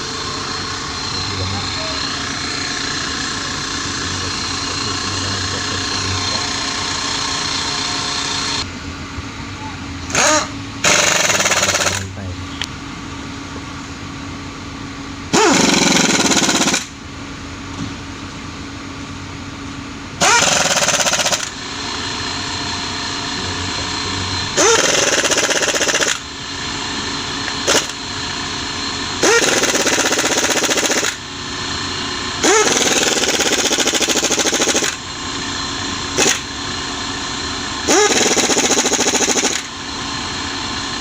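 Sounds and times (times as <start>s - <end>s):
mechanical hum: 0.0s - 41.0s
impact wrench rattling: 10.1s - 12.0s, 20.2s - 21.6s, 24.6s - 26.2s, 27.6s - 28.0s, 29.2s - 31.2s, 37.9s - 39.7s.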